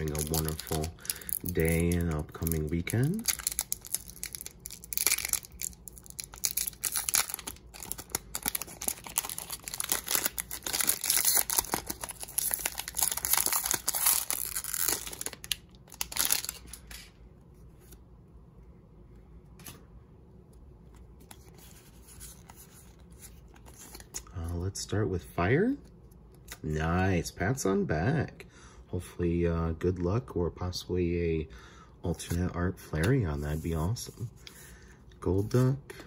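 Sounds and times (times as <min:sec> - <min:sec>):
foil wrapper tearing and crinkling: 0:00.0 - 0:17.0.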